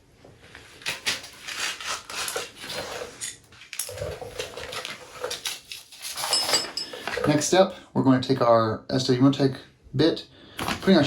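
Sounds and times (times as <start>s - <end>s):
metal parts and tools clinking: 5.3s - 7.4s.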